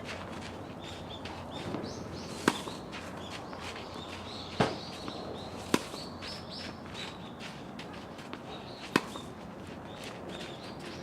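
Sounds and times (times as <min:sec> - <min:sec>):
small birds chirping: 0:00.8 - 0:07.4, 0:08.4 - 0:11.0
tennis ball impacts: 0:01.7 - 0:02.9, 0:04.6 - 0:04.9, 0:05.6 - 0:06.1, 0:08.3 - 0:09.3.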